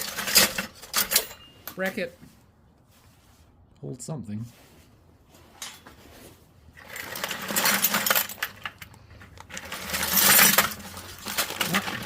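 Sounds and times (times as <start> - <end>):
metal scrap clinking in bucket: 0.0 - 1.8, 6.8 - 12.0.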